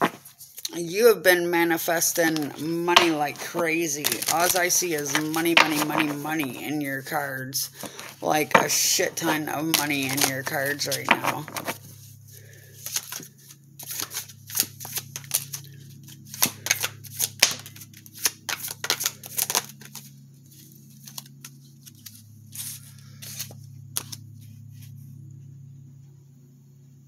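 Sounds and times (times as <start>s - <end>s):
steady low hum: 0.0s - 27.0s
cards slapping and flicking: 2.1s - 6.7s, 7.7s - 11.9s, 12.8s - 24.2s.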